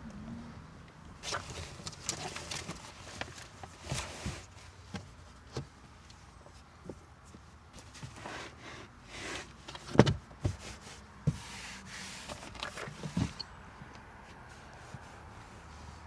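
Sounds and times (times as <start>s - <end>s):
dull knocks and thumps: 9.8s - 11.5s.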